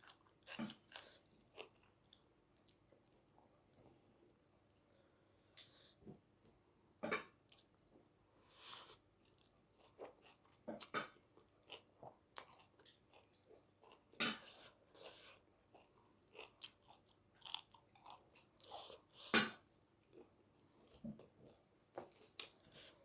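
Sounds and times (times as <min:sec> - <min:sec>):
person chewing: 0:00.0 - 0:02.9, 0:08.6 - 0:20.3.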